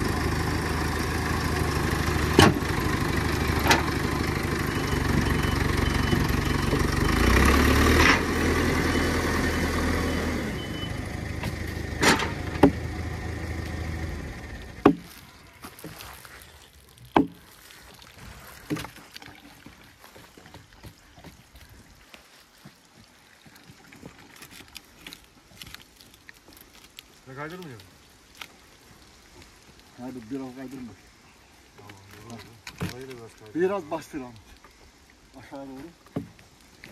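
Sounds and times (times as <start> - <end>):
engine running: 0.0 - 15.3
sharp knocks: 12.0 - 12.8, 14.8 - 15.1, 17.2 - 17.4.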